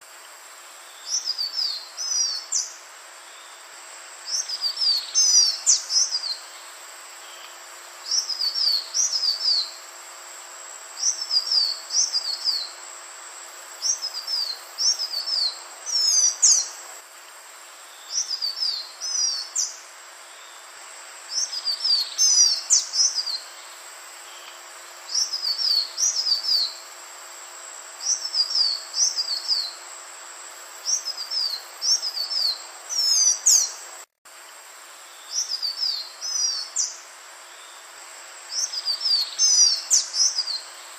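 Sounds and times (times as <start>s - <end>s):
steady background hiss: 0.0s - 40.9s
bird whistling song: 11.0s - 12.7s, 21.3s - 23.5s, 35.2s - 37.0s, 38.5s - 40.7s.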